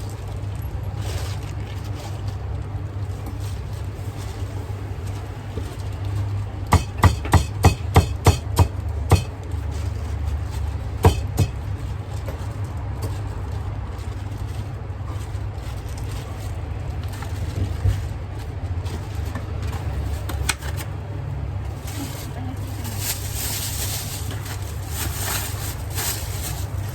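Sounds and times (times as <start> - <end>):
sharp knocks: 6.7 - 9.3, 11.0 - 11.6.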